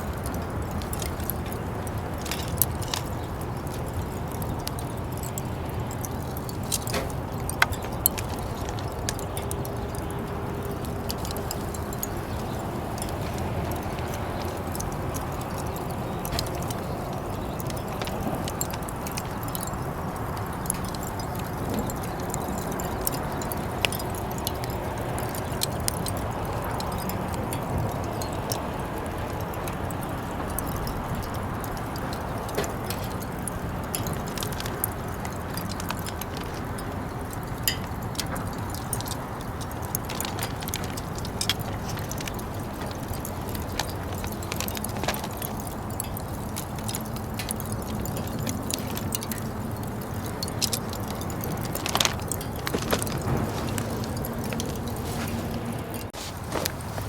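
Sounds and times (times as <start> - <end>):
grill hissing: 0.0 - 57.0
light metallic clinks: 0.0 - 57.0
sharp crackles: 0.0 - 57.0.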